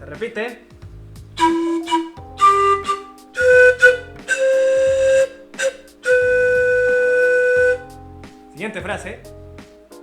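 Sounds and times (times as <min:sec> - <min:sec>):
breathy panpipe notes: 0:01.4 - 0:07.9.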